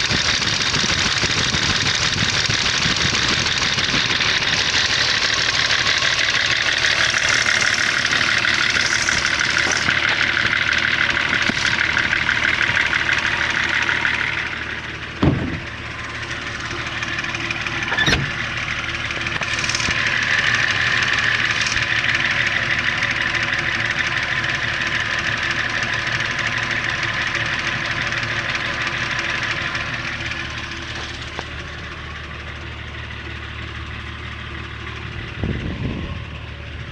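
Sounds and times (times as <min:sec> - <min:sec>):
diesel engine knocking rattle: 0:00.0 - 0:36.9
sharp thuds: 0:15.1 - 0:16.0.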